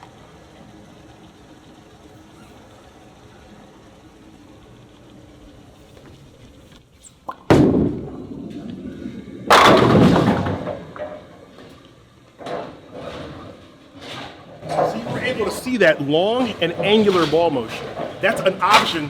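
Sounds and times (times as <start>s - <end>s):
bowling ball thud and rolling: 7.2s - 11.8s, 12.4s - 19.0s
bowling pins crashing and clattering: 7.3s - 19.0s.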